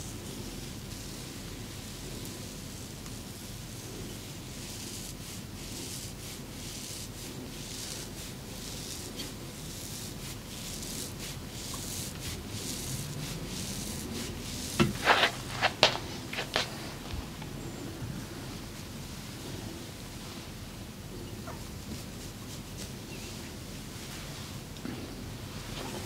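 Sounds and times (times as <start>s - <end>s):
hands rubbing skin: 14.8s - 17.5s.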